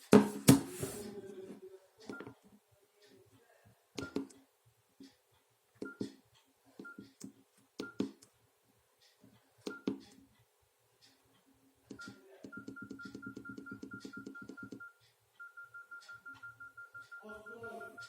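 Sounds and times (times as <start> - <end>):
key-tone beeps: 5.8 - 6.2, 7.8 - 8.1, 9.7 - 9.9, 11.9 - 18.0.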